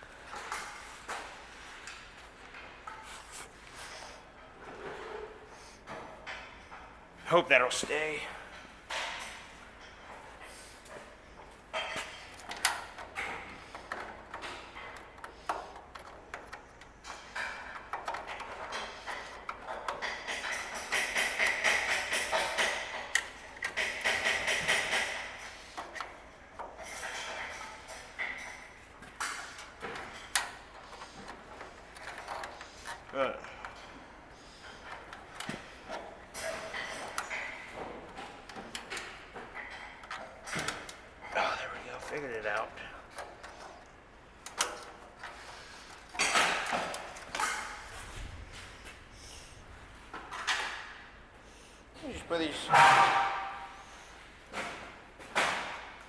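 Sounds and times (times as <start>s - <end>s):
hand tools clinking and rattling: 8.0s - 43.8s, 44.4s - 48.3s
metal parts clicking and tapping: 10.8s - 47.9s.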